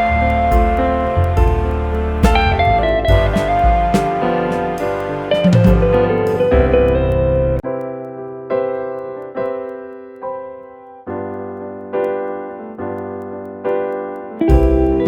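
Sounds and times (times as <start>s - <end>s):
low bass: 0.0s - 7.6s, 14.5s - 15.0s
sustained keyboard chords: 0.0s - 15.0s.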